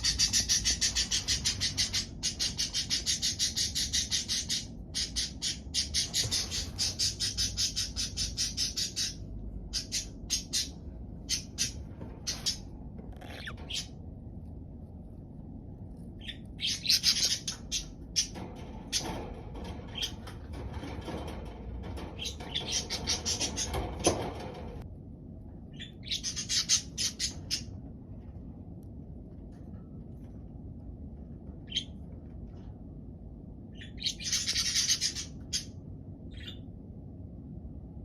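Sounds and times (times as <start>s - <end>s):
budgerigars chirping: 0.0s - 13.9s, 16.2s - 18.4s, 25.8s - 27.7s, 33.8s - 35.7s
budgerigars warbling chatter: 0.0s - 13.9s.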